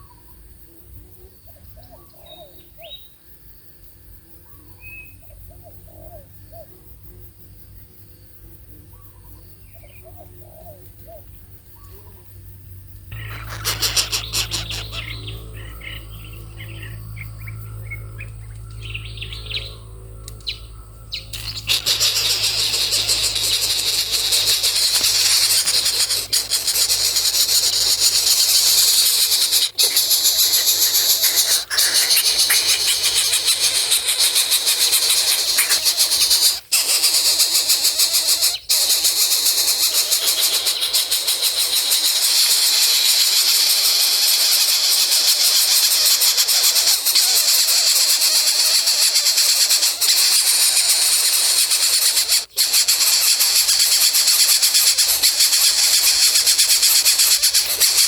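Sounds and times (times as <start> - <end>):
small bird chirps: 13.0 - 58.0
loud high-pitched hiss: 13.2 - 15.2, 21.3 - 58.0.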